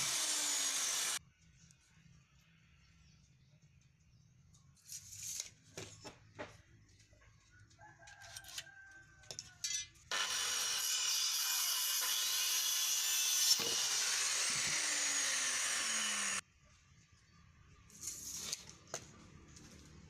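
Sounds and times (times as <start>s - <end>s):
power saw cutting wood: 0.0s - 1.2s, 10.1s - 16.4s.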